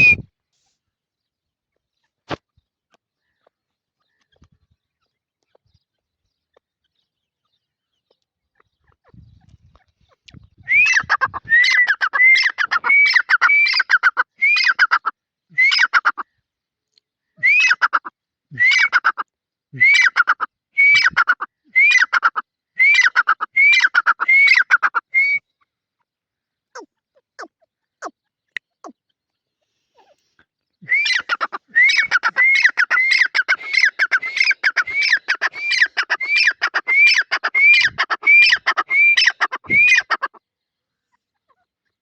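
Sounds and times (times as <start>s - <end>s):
francolin calling: 10.6s - 16.2s, 19.8s - 25.7s, 29.6s - 40.4s.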